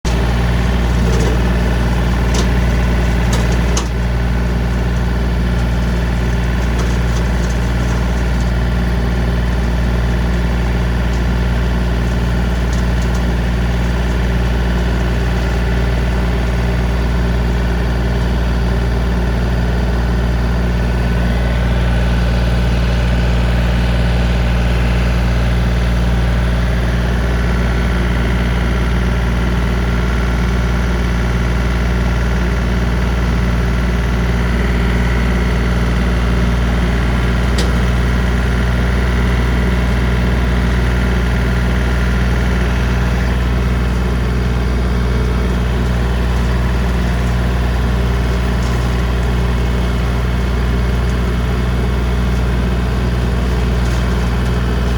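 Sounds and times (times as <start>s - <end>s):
tractor diesel engine running: 0.0s - 54.9s.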